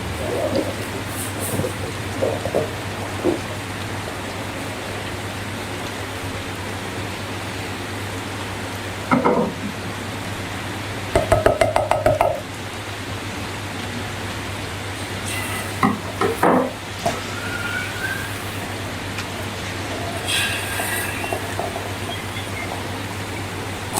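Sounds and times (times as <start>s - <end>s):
steady hiss: 0.0s - 23.9s
squeaky rubbing of balloons: 15.2s - 18.9s, 19.8s - 23.9s.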